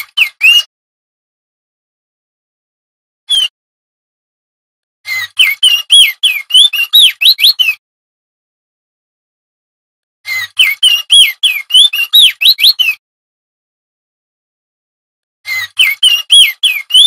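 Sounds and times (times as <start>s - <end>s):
bird singing whistled notes: 0.1s - 0.7s, 3.3s - 3.5s, 5.1s - 7.8s, 10.3s - 13.0s, 15.5s - 17.0s.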